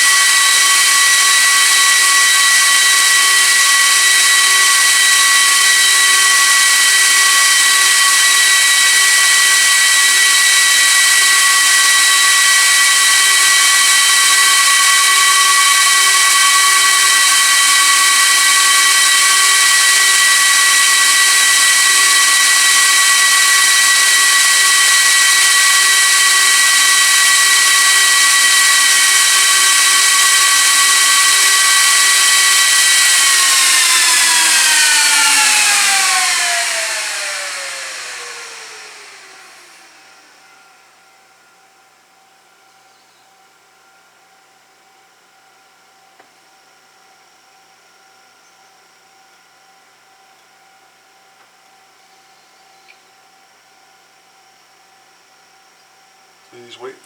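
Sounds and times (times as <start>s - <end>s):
server cooling fans whining: 0.0s - 40.9s, 54.6s - 57.0s.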